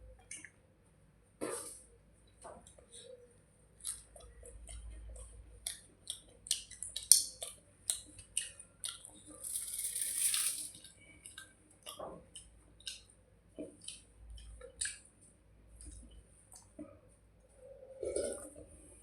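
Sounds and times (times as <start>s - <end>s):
wet chewing mouth sounds: 3.8s - 9.4s, 11.0s - 15.1s.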